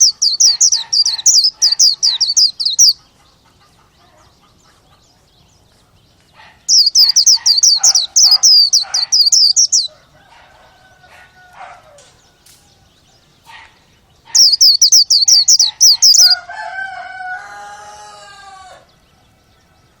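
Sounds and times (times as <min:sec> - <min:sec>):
high bird chirps: 0:00.0 - 0:03.0, 0:06.7 - 0:10.0, 0:13.5 - 0:16.4
drawn-out crowing call: 0:14.4 - 0:18.9.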